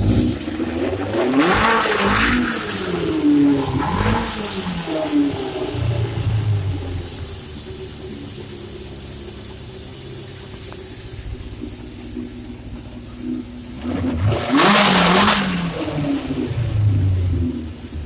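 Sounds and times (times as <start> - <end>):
motorcycle engine idling and revving: 0.0 - 18.0.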